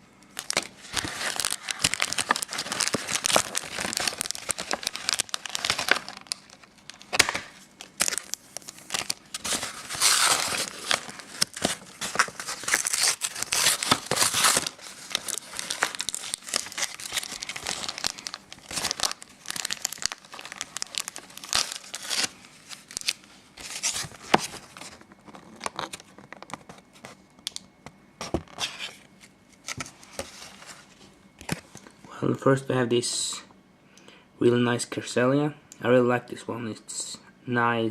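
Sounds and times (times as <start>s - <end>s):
plastic packaging crinkling and tearing: 0.3s - 27.1s.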